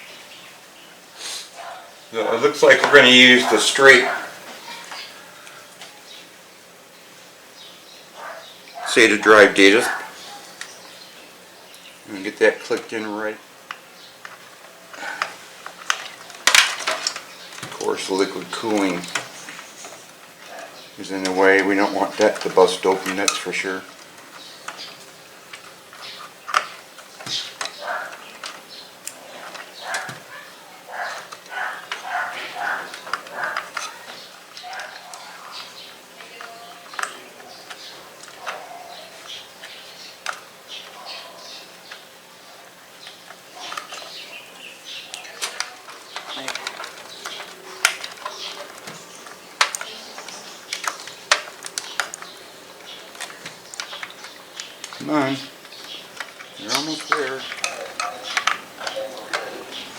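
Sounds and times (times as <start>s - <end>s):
plastic and metal clicks: 44.9s - 59.9s.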